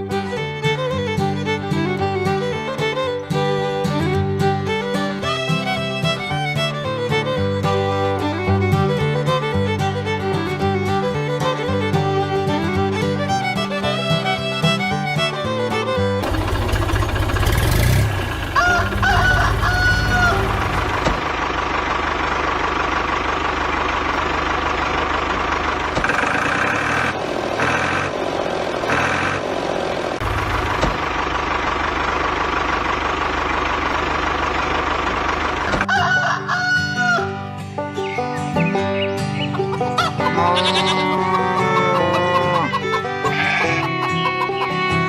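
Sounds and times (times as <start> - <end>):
rooster crowing: 18.4 - 20.9, 35.8 - 37.4
chickens clucking: 18.4 - 21.2, 38.0 - 45.0.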